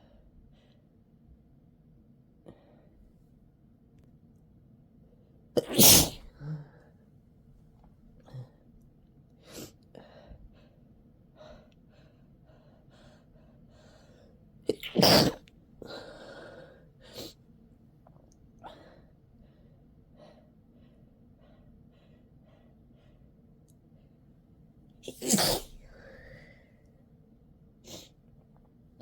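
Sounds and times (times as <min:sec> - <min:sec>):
person sniffing: 0:05.6 - 0:06.4, 0:25.1 - 0:26.5, 0:27.9 - 0:28.1
person sneezing: 0:05.6 - 0:06.5, 0:14.7 - 0:15.4, 0:25.0 - 0:26.3
breathy exhale: 0:25.6 - 0:26.9.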